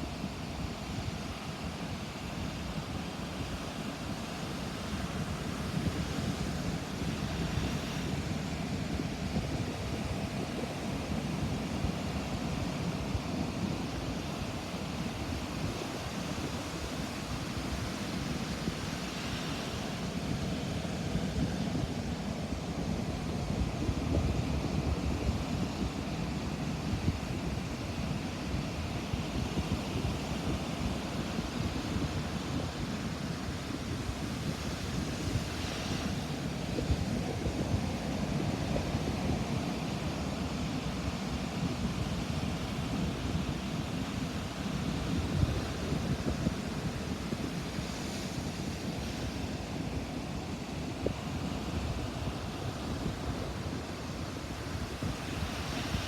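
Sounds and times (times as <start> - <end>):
ocean surf on a beach: 0.0 - 56.0
wind buffeting microphone: 19.6 - 56.0.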